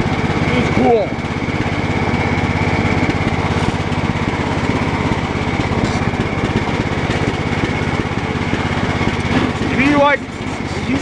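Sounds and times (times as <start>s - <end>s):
high engine whine: 0.0s - 11.0s
lawn tractor engine chugging: 0.0s - 11.0s.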